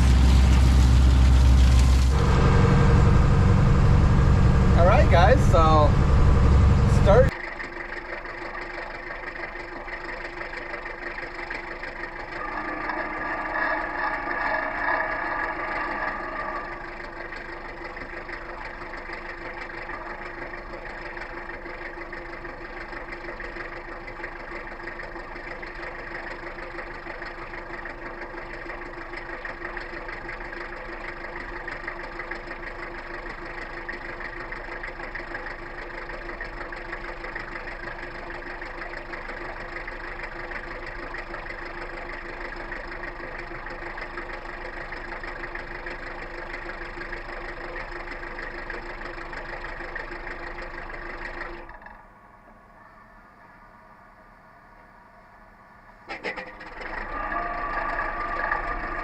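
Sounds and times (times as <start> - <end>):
higher-pitched whine: 0.0 - 7.3, 12.0 - 17.8
boat engine droning: 0.0 - 59.0.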